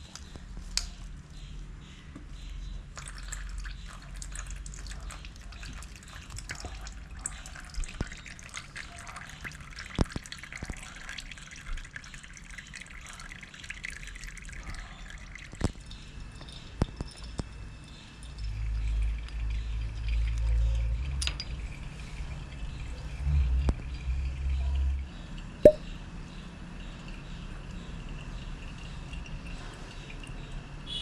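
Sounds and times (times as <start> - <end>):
oil dripping into container: 2.1 - 21.2.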